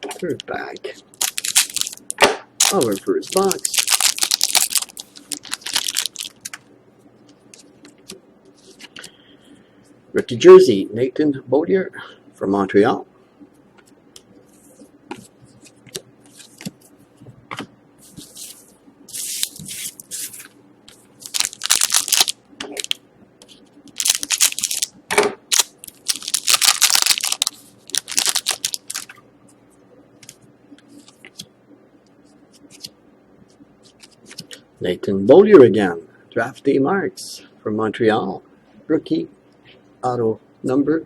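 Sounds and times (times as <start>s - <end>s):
plastic wrapping crinkling and tearing: 1.1s - 6.6s, 21.2s - 23.0s, 23.9s - 24.9s, 25.5s - 29.2s.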